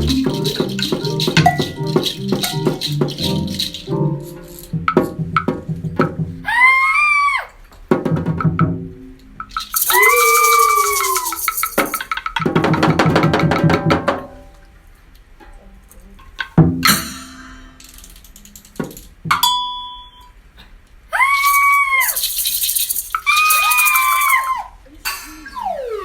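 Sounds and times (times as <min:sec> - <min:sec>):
gliding pitched sounds: 0:00.0 - 0:04.9
shakers rattling: 0:00.0 - 0:05.2, 0:09.3 - 0:12.4, 0:17.8 - 0:19.2, 0:21.3 - 0:24.6.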